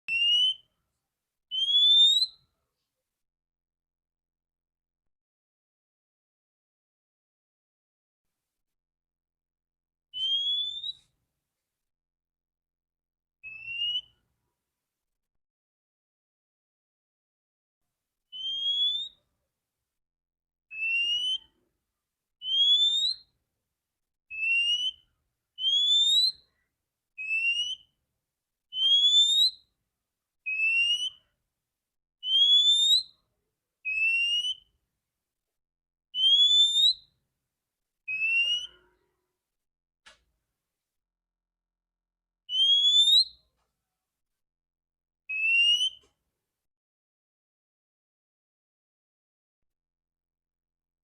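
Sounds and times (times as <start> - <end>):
bird whistling calls: 0.1 - 0.7, 1.5 - 2.3, 10.2 - 11.0, 13.4 - 14.2, 18.3 - 19.2, 20.7 - 21.5, 22.4 - 23.2, 24.3 - 25.0, 25.6 - 26.4, 27.2 - 27.9, 28.7 - 29.6, 30.5 - 31.2, 32.2 - 33.1, 33.9 - 34.7, 36.2 - 37.0, 38.1 - 38.8, 42.5 - 43.4, 45.3 - 46.1.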